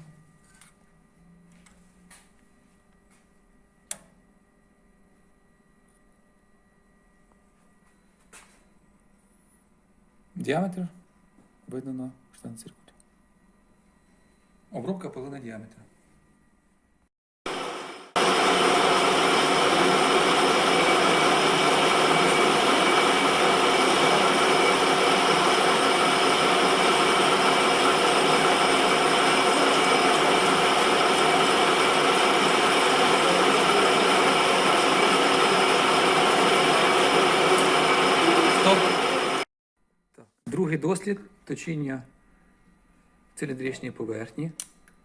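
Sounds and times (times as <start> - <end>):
metal lathe gearbox whining: 19.4 - 39.4.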